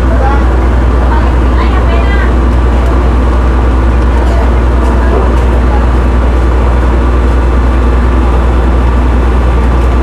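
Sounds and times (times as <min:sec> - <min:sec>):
ferry engines droning: 0:00.0 - 0:10.0.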